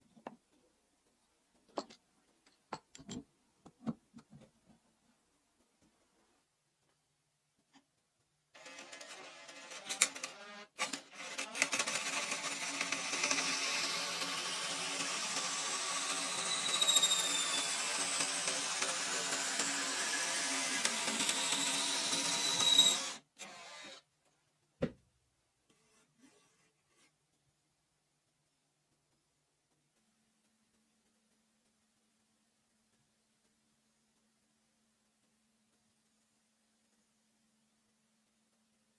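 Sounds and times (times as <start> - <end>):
power tool running on wood: 8.6 - 24.0.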